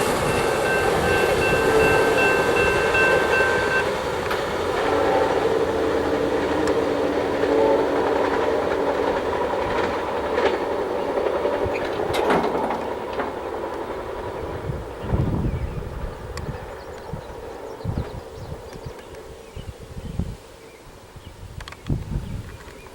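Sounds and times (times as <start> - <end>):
high wheel squeal: 0.0 - 4.0
low steady tones: 0.0 - 8.3
wheels clicking over rail joints: 0.0 - 19.4
train cars rolling on rails: 0.0 - 19.8.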